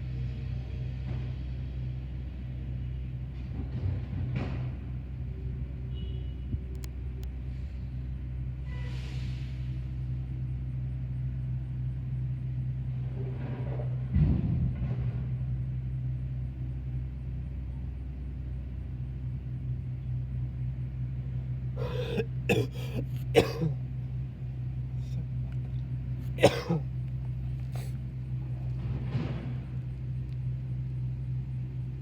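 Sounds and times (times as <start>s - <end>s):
low outdoor rumble: 0.0s - 32.0s
person coughing: 21.8s - 23.8s, 26.3s - 26.9s.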